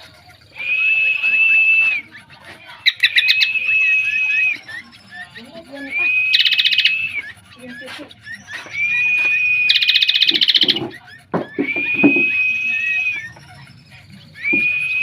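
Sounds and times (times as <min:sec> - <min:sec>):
fainter lower calls: 0:00.0 - 0:15.0
songbird singing: 0:00.0 - 0:15.0.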